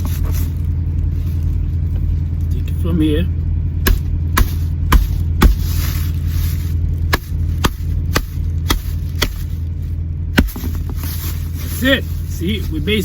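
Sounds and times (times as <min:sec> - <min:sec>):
truck engine idling hum: 0:00.0 - 0:13.0
hammer knocking on machete blade: 0:03.9 - 0:05.6, 0:07.1 - 0:09.4, 0:10.4 - 0:10.7.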